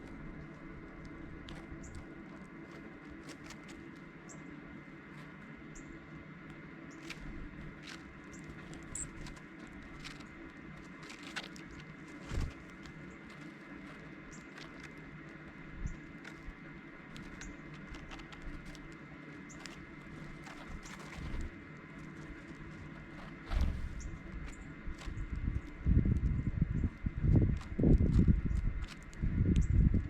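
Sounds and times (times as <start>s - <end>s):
faint hum: 0.0s - 30.0s
high bird chip calls: 4.2s - 4.6s, 8.2s - 9.4s
birds pecking taps: 6.4s - 26.3s, 27.5s - 29.8s.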